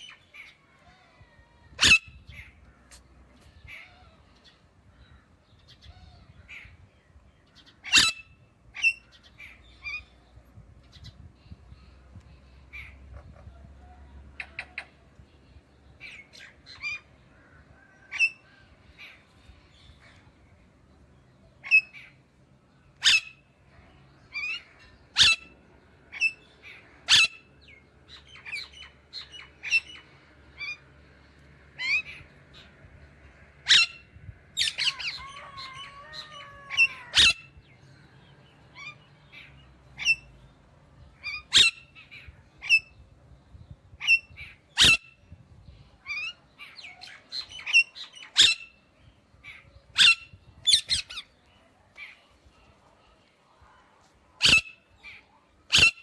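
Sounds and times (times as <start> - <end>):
parrot warbling chatter: 1.7 - 2.5, 7.8 - 9.1, 24.3 - 25.5, 34.6 - 37.6, 44.8 - 45.0, 54.4 - 54.8, 55.7 - 56.0
parrot squawking and chirping: 1.7 - 2.6, 7.8 - 10.1, 16.0 - 17.1, 18.1 - 18.4, 21.6 - 22.2, 23.0 - 23.4, 24.3 - 30.0, 31.8 - 32.7, 33.6 - 37.6, 38.8 - 40.3, 41.2 - 43.0, 44.0 - 45.2, 46.0 - 51.3, 54.4 - 56.0.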